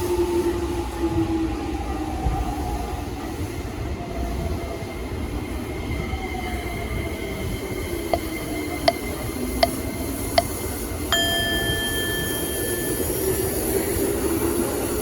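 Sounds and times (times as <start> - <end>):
ringing ding: 11.1 - 14.1.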